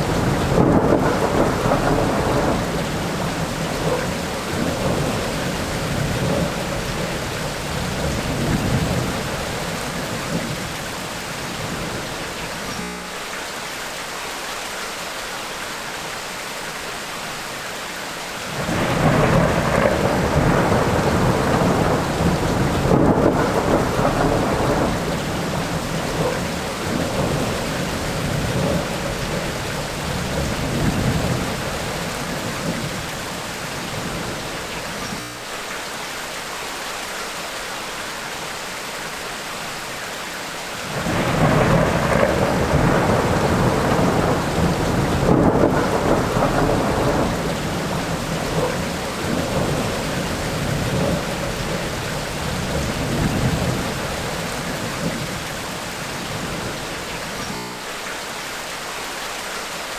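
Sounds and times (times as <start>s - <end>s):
thunder rolling: 0.0s - 12.9s, 18.5s - 35.2s, 40.9s - 57.6s
steady rain: 0.0s - 59.9s.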